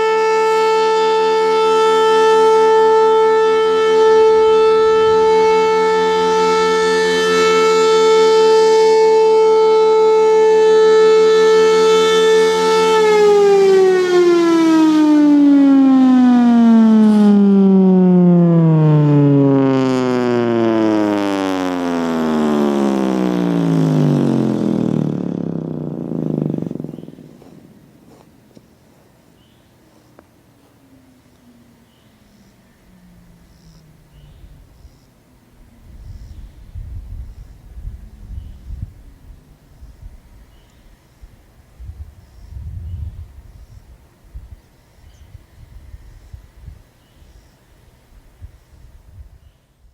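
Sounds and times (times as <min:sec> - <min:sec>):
warning siren winding down: 0:00.0 - 0:27.9, 0:31.4 - 0:34.9.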